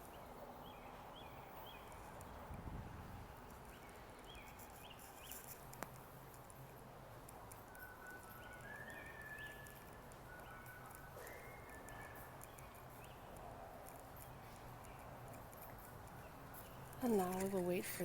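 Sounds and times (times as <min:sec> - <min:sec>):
birds chirping faintly: 0:07.3 - 0:18.0.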